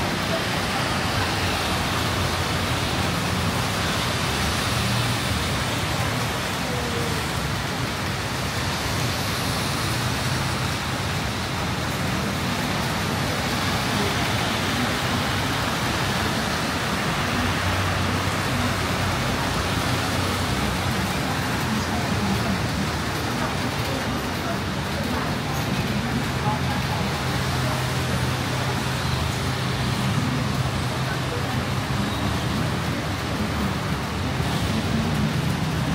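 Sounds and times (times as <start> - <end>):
heavy rain pouring: 0.0 - 35.9
road traffic hum: 0.0 - 35.9.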